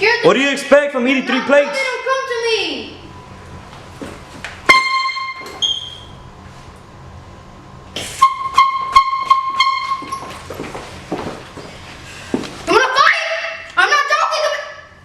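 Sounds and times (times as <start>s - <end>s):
air horn blasts: 4.7s - 5.7s, 8.2s - 10.2s.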